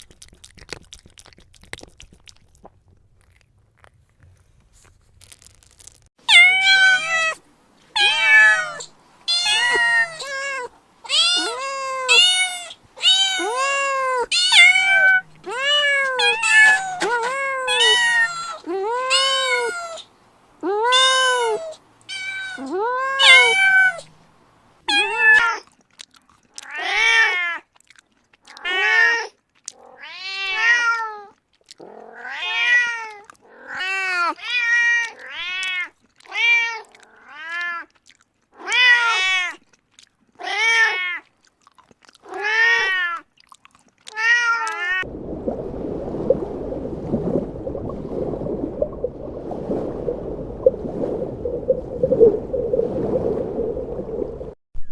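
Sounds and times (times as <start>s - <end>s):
kitten meowing: 6.3s - 7.4s, 8.0s - 20.0s, 20.8s - 24.1s, 24.9s - 25.6s.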